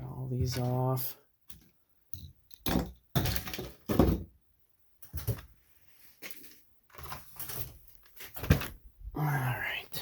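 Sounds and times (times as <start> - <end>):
objects clattering on workbench: 1.5 - 4.4, 5.0 - 5.6, 6.2 - 8.8.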